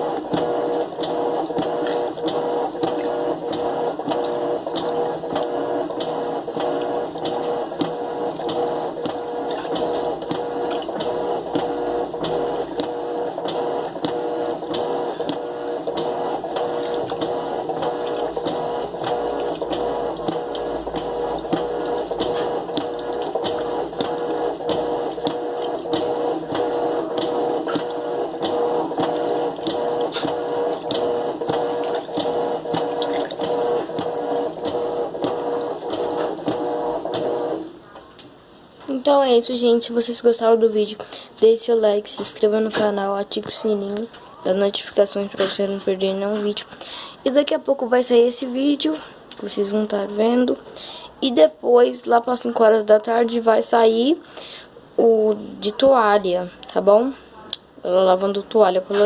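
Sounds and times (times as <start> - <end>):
washing machine motor hum: 0.0 - 38.0
even ticking: 0.3 - 37.3.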